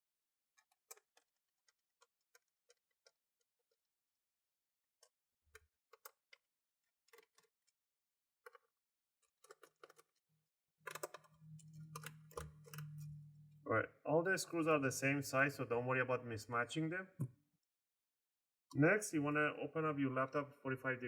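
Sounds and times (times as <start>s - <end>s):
low hum: 11.3s - 16.6s.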